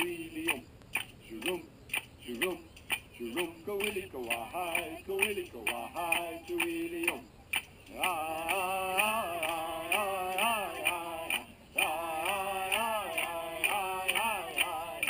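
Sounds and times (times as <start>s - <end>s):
man chanting: 0.0s - 7.3s
ticking percussion beat: 0.0s - 15.0s.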